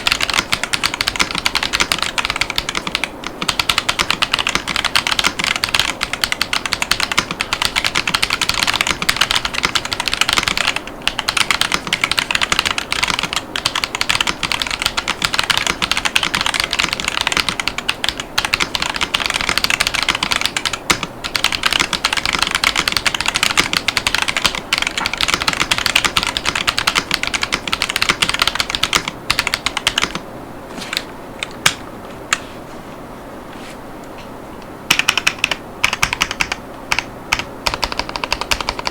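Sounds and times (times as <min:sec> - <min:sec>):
rapid typing on mechanical keyboard: 0:00.0 - 0:30.2, 0:34.9 - 0:38.9.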